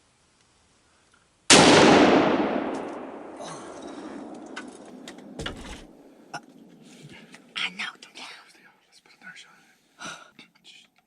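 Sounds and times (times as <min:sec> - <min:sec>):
rifle shot echoing: 0:01.5 - 0:03.4.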